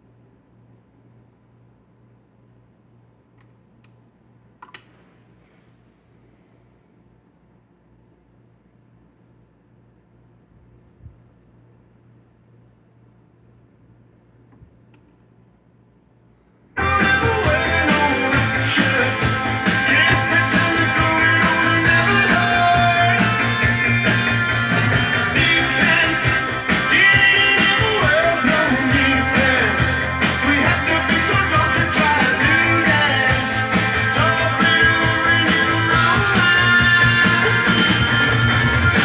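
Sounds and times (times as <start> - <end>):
rock music from vinyl record: 16.8 - 39.0.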